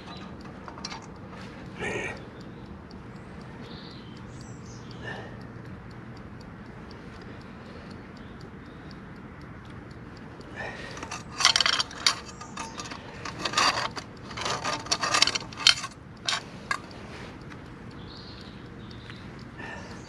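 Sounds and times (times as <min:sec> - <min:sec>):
metal clinking and scraping: 0:00.0 - 0:01.1, 0:11.0 - 0:16.9.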